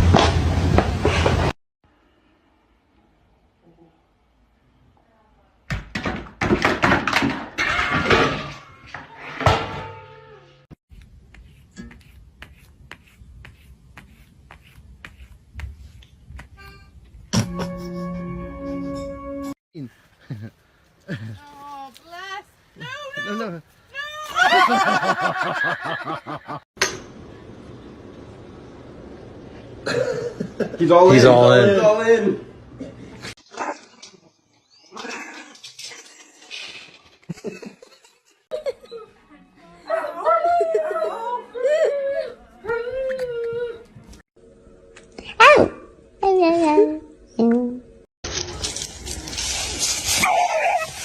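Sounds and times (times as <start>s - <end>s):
person laughing: 17.4s - 19.1s, 20.2s - 21.6s, 24.3s - 26.6s.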